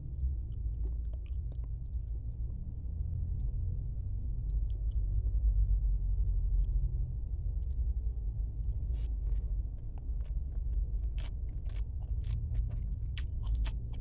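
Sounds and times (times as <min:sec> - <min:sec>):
steady low rumble: 0:00.0 - 0:14.0
person chewing: 0:10.0 - 0:14.0.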